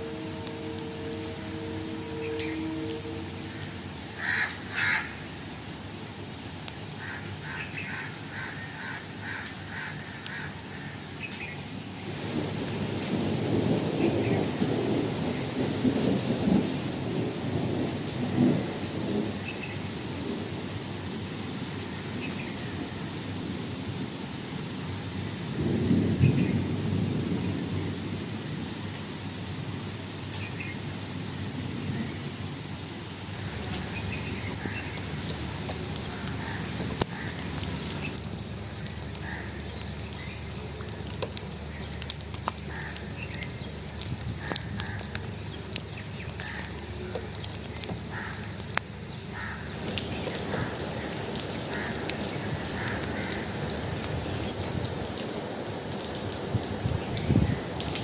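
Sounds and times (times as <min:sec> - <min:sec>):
steady rain: 0:00.0 - 0:58.0
low thunder rumbles: 0:11.9 - 0:23.0, 0:25.2 - 0:58.0.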